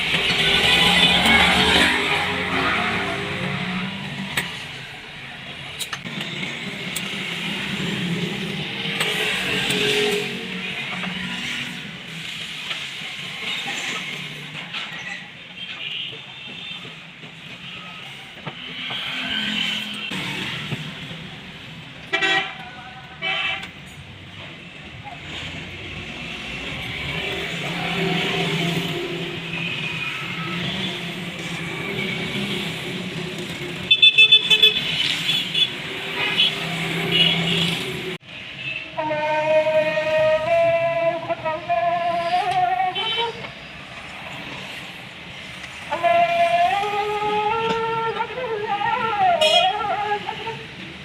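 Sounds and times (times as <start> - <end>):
steady background noise: 0.0 - 51.0
vehicle horn toots: 33.9 - 37.8, 49.4 - 49.9.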